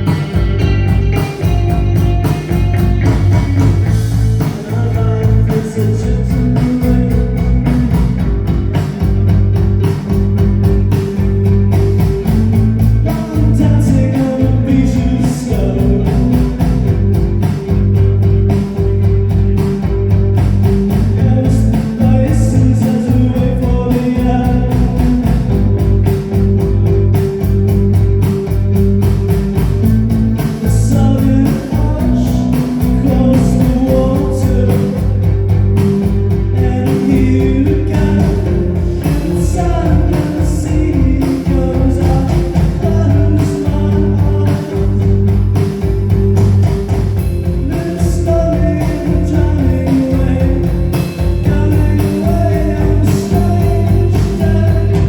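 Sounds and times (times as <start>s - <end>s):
person singing: 0.0s - 8.0s, 12.5s - 17.5s, 21.0s - 26.6s, 30.4s - 45.6s, 47.5s - 55.0s
live rock band playing: 0.0s - 55.0s.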